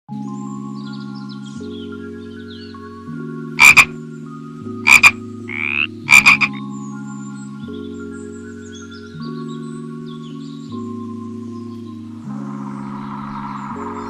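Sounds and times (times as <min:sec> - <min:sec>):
soft background music: 0:00.1 - 0:14.0
frog croaking: 0:03.6 - 0:04.0, 0:04.8 - 0:06.6.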